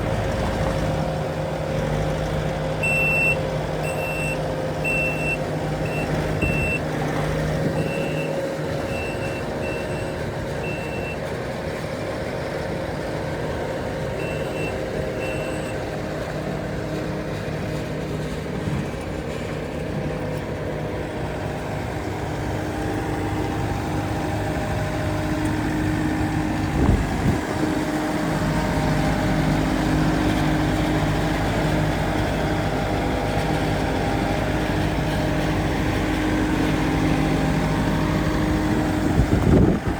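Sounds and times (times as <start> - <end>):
diesel engine running: 0.0 - 39.9
back-up alarm beeping: 2.8 - 6.9, 7.7 - 11.2, 14.2 - 15.8.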